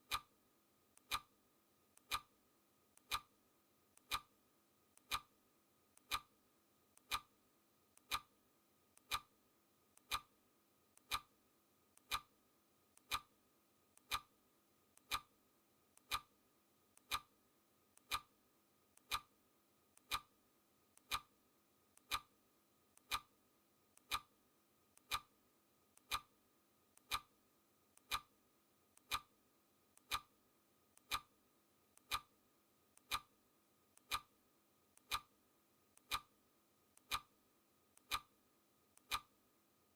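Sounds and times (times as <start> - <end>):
clock ticking: 0.1 - 0.3, 1.0 - 1.3, 2.0 - 2.3, 3.0 - 3.3, 4.0 - 4.3, 5.0 - 5.3, 6.0 - 6.3, 7.0 - 7.3, 8.0 - 8.3, 9.0 - 9.3, 10.0 - 10.3, 11.0 - 11.3, 12.0 - 12.3, 13.0 - 13.3, 14.0 - 14.3, 15.0 - 15.3, 16.0 - 16.3, 17.0 - 17.3, 18.0 - 18.3, 19.0 - 19.3, 20.0 - 20.3, 21.0 - 21.3, 22.0 - 22.3, 23.0 - 23.3, 24.0 - 24.3, 25.0 - 25.3, 26.0 - 26.3, 27.0 - 27.3, 28.0 - 28.3, 29.0 - 29.3, 30.0 - 30.3, 31.0 - 31.3, 32.0 - 32.3, 33.0 - 33.3, 34.0 - 34.3, 35.0 - 35.3, 36.0 - 36.3, 37.0 - 37.3, 38.0 - 38.3, 39.0 - 39.3.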